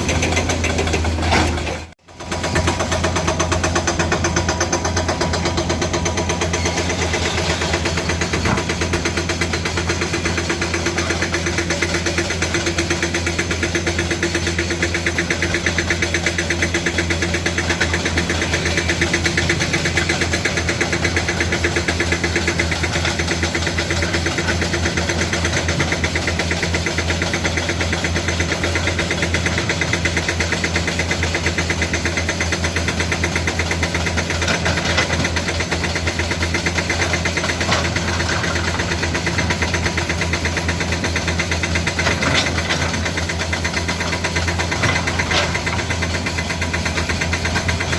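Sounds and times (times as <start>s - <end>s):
excavator diesel engine running: 0.0s - 47.9s.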